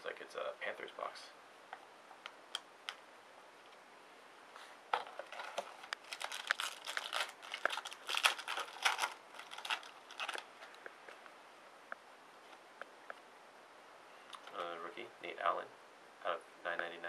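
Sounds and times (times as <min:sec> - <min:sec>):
foil wrapper crinkling and tearing: 0:05.3 - 0:10.5.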